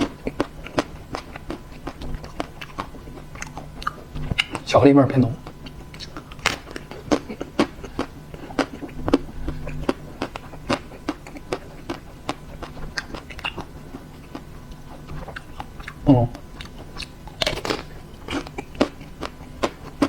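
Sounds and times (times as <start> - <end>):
chocolate shell crunching: 16.6 - 19.9.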